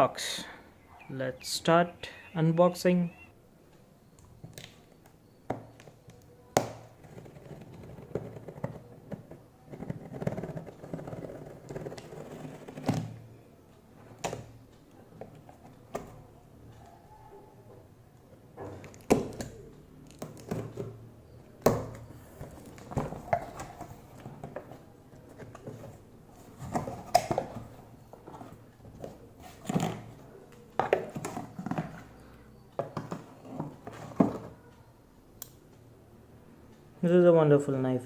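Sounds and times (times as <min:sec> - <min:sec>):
cardboard rustling: 0:07.0 - 0:13.2, 0:22.1 - 0:32.2
box knocks and thuds: 0:21.7 - 0:24.8, 0:25.4 - 0:30.2.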